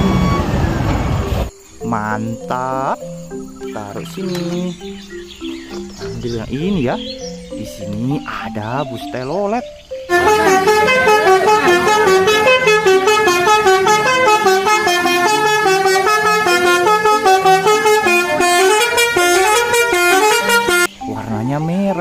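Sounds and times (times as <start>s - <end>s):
bus horn playing a melody: 10.1s - 20.9s.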